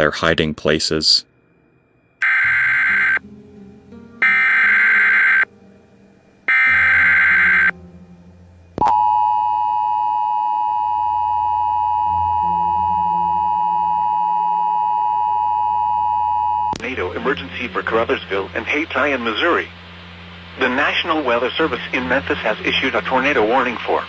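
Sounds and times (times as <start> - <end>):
buzzing data bursts: 2.2 - 3.2, 4.2 - 5.5, 6.5 - 7.8
two-tone alert signal: 2.2 - 3.2, 4.2 - 5.5, 6.5 - 7.8, 8.8 - 16.8.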